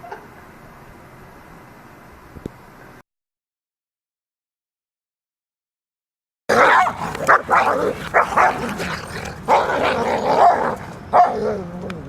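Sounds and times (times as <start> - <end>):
dog barking: 6.5 - 11.6.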